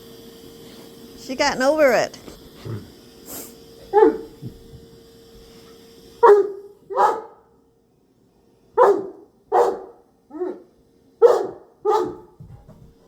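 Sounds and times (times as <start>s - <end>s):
dog barking deeply: 3.9s - 4.4s, 6.2s - 7.4s, 8.8s - 12.3s.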